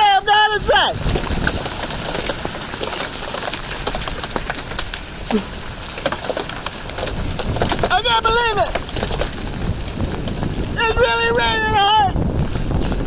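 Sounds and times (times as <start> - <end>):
hailstones ticking on hard surfaces: 0.0 - 13.0
rain hissing: 0.0 - 13.0.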